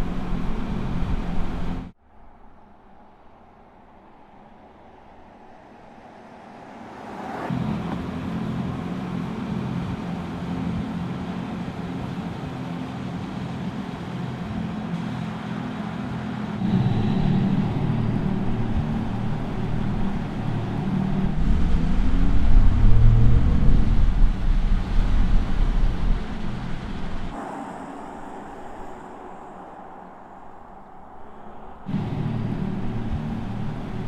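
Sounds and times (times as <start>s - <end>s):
electric car drive sound: 7.5s - 27.5s, 31.8s - 34.0s.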